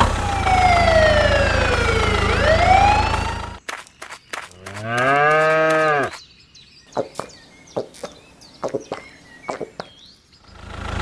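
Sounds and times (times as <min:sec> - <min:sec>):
engine running: 0:00.0 - 0:03.6, 0:10.4 - 0:11.0
small birds chirping: 0:03.6 - 0:10.7
cow mooing: 0:04.7 - 0:06.2.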